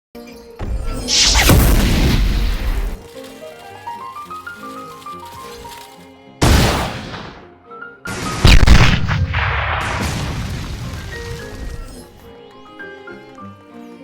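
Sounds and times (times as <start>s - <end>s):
faint background music: 0.2s - 10.2s, 11.0s - 14.0s
loud explosive blasts: 0.7s - 3.0s, 6.4s - 7.4s, 8.1s - 12.2s.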